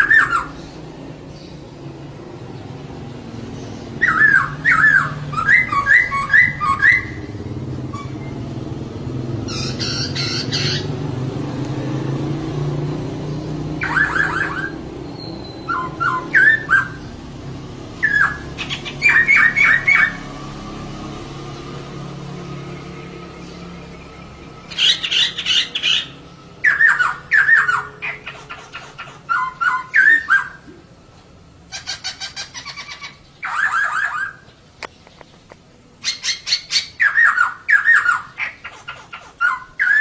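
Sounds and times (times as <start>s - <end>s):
bird chattering calls: 0.0s - 0.8s, 3.6s - 8.4s, 9.3s - 11.1s, 13.8s - 17.1s, 18.0s - 20.2s, 24.6s - 30.8s, 31.7s - 35.4s, 36.0s - 40.0s.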